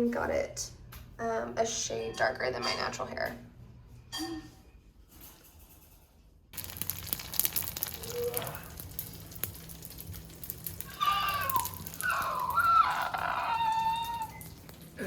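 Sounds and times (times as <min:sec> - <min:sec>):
food sizzling in a pan: 0:06.6 - 0:15.0.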